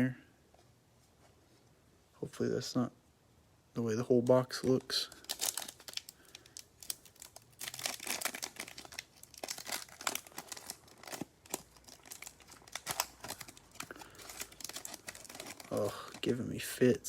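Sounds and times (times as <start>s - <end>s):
wrapper tearing and crinkling: 4.8s - 16.4s.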